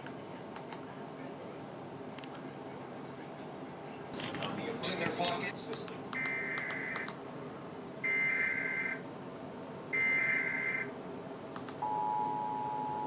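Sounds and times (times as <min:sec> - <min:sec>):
two-tone attention signal: 0:11.8 - 0:13.0.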